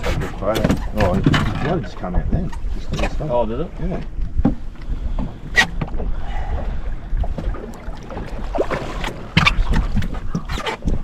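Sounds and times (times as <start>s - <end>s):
low wind rumble: 0.0s - 11.0s
water lapping against boat hull: 0.0s - 11.0s.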